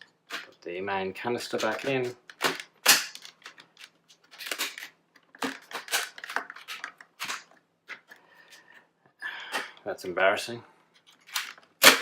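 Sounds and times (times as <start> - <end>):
plastic parts clicking and scraping: 1.4 - 8.7, 10.9 - 12.0.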